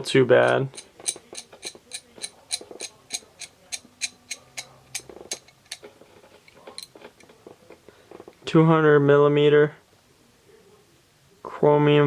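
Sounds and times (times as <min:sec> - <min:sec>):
rustling of hand tools: 0:00.0 - 0:08.6
steady ticking: 0:00.4 - 0:05.5.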